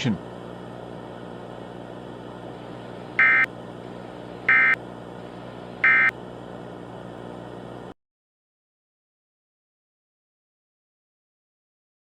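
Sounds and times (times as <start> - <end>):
steady low hum: 0.0 - 8.0
data tone bursts: 3.2 - 3.5, 4.5 - 4.8, 5.8 - 6.1.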